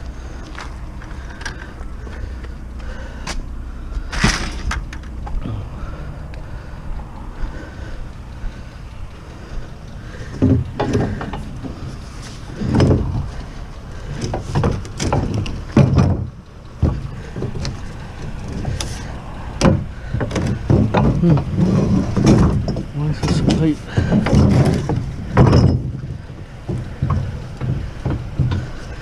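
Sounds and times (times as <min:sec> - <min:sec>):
low steady rumble: 0:00.0 - 0:29.0
heavy thumps of wood handled: 0:10.1 - 0:19.0, 0:19.6 - 0:29.0.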